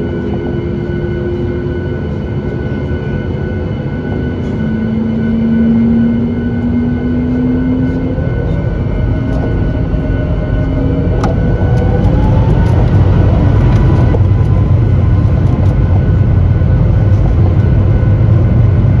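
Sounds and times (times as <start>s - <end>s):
jet engines rumbling: 0.0s - 19.0s
rising engine tone: 4.6s - 19.0s.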